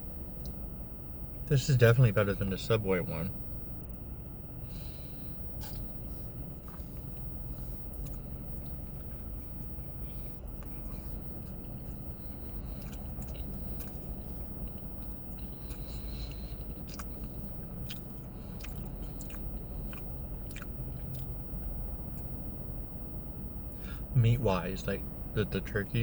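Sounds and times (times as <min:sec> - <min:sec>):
car cabin hum: 0:00.0 - 0:26.0
person chewing sandwich: 0:04.5 - 0:24.1
wet mouth clicks: 0:05.6 - 0:21.4.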